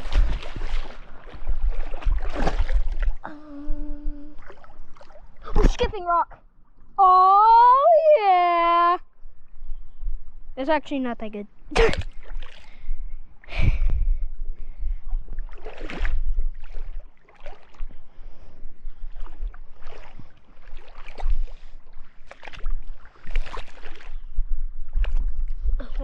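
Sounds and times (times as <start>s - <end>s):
creek water splashing: 0.0s - 3.4s, 4.3s - 5.8s, 11.7s - 12.9s, 15.2s - 25.2s
low rumble on microphone: 0.0s - 5.6s, 11.8s - 26.0s.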